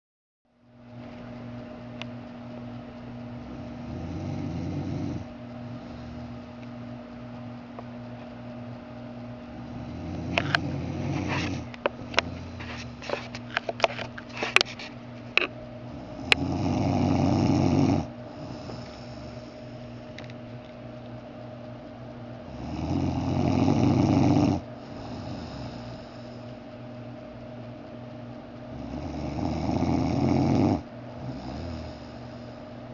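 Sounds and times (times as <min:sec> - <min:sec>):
man snoring: 0:03.4 - 0:06.5, 0:09.5 - 0:13.0, 0:15.9 - 0:19.6, 0:22.4 - 0:26.5, 0:28.7 - 0:32.6.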